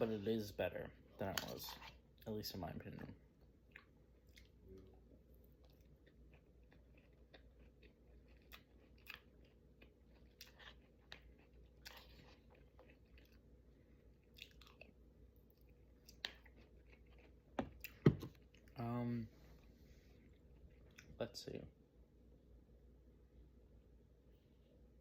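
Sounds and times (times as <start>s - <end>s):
person chewing: 3.4s - 18.8s, 20.2s - 21.2s.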